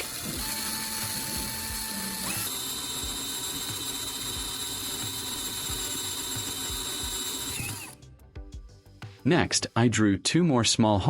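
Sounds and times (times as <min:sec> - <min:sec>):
electric drill boring through metal: 0:00.0 - 0:08.0.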